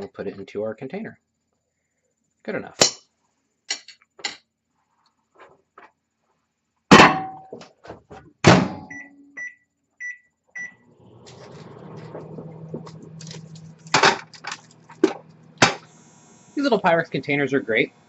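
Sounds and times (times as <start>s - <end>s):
short beeps from control panel: 8.9s - 10.8s
microwave humming: 10.6s - 18.0s
microwave door shutting: 11.1s - 15.9s.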